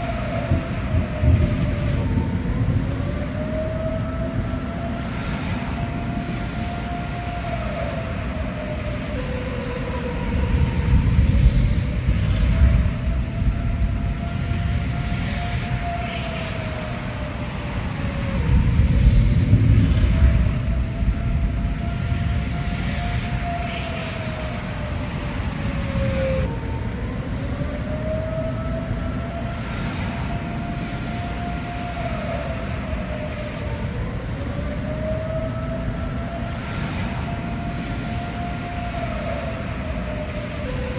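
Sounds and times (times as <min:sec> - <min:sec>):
warning siren wailing: 0:00.0 - 0:40.9.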